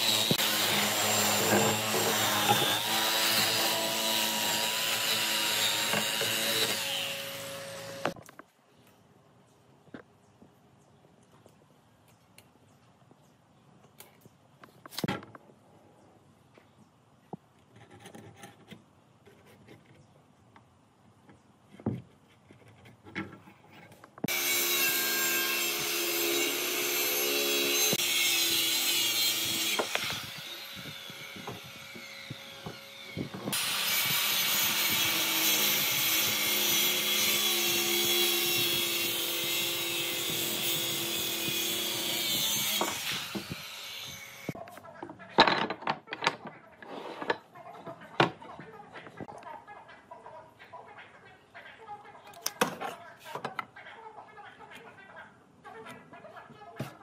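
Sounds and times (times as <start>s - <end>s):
power tool cutting wood: 0.0s - 8.2s, 24.3s - 44.6s.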